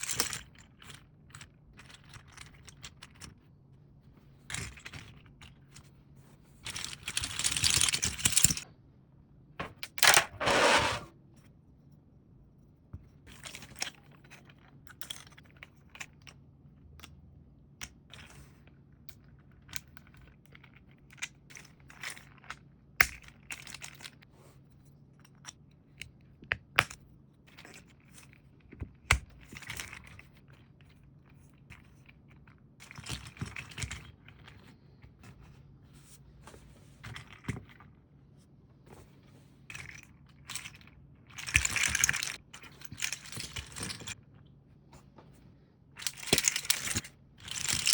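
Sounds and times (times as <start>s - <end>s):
plastic segments clicking and rattling: 6.6s - 8.6s, 9.7s - 11.0s, 46.0s - 47.9s.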